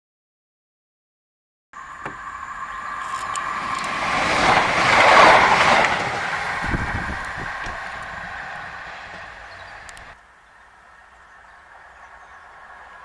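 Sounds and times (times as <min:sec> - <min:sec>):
train passing at speed: 0:01.8 - 0:13.0
low knocks of train: 0:03.5 - 0:10.2.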